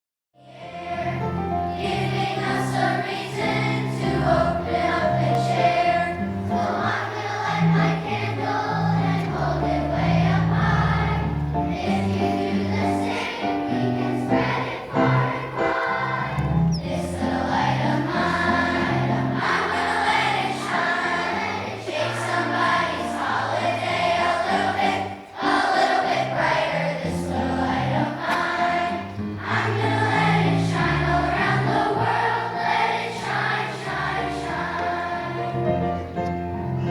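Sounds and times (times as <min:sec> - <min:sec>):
choir singing: 0:00.4 - 0:36.9.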